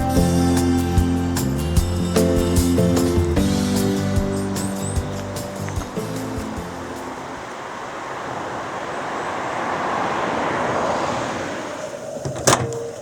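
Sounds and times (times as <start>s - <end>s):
road vehicle passing by: 0.0s - 13.0s.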